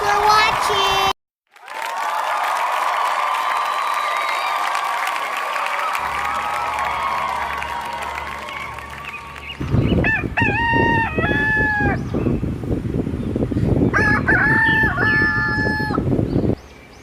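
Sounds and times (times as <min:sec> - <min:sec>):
rooster crowing: 0:05.6 - 0:09.4, 0:10.0 - 0:12.0, 0:13.9 - 0:16.0.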